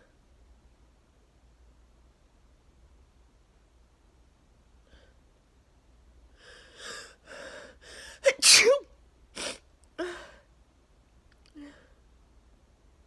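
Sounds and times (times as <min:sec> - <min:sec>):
person gasping before sneezing: 0:08.1 - 0:08.8
loud sneeze: 0:08.3 - 0:08.8.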